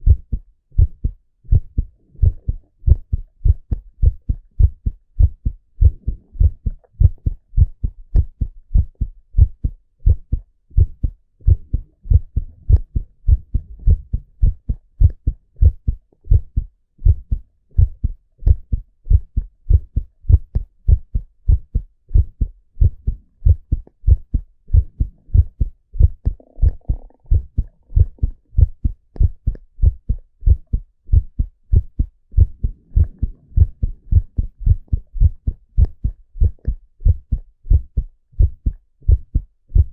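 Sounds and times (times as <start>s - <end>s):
heartbeat through stethoscope: 0.0s - 39.9s.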